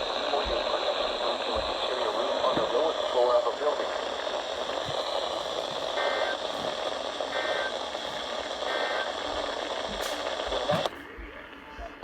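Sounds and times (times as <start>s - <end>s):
radio hiss: 0.0s - 12.0s
two-tone digital data bursts: 5.9s - 6.6s, 7.2s - 7.8s, 8.6s - 9.2s.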